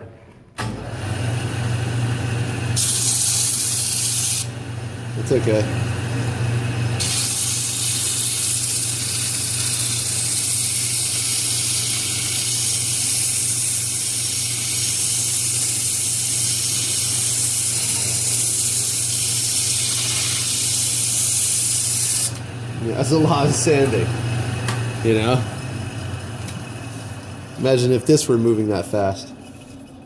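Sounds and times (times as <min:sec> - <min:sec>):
lathe motor humming: 0:00.6 - 0:30.0
sandpaper hissing on spinning wood: 0:02.8 - 0:04.5, 0:07.0 - 0:22.4.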